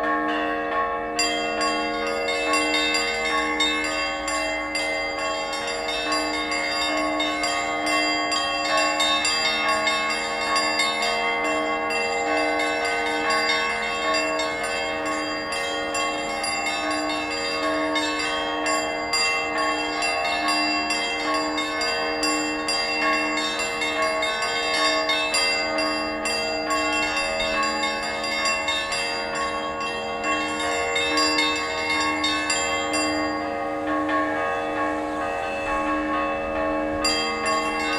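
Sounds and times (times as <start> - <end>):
church bells ringing: 0.0 - 37.9.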